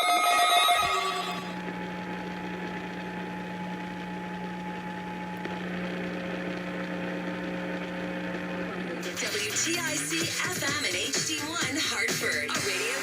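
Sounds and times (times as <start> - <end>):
faint thin tone: 0.0 - 1.6
electrical mains hum: 0.0 - 9.1.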